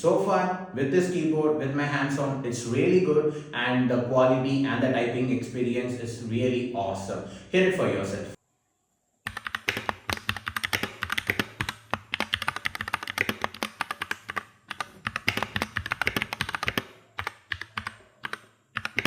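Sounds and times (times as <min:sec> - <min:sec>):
mechanical keyboard typing: 0:09.3 - 0:19.0.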